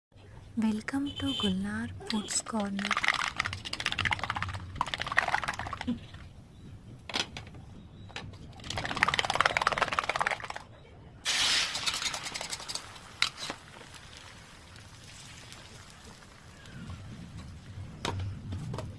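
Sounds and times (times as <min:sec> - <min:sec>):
crackly clicking and scraping: 0:02.0 - 0:06.3, 0:11.8 - 0:13.9
loud hiss: 0:11.3 - 0:11.9.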